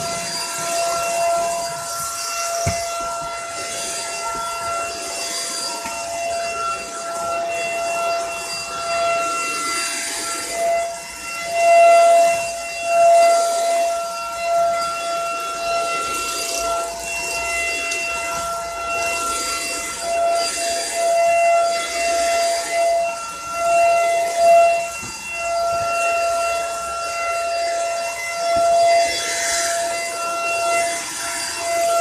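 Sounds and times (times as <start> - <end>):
stick vacuum running: 0.0 - 10.2.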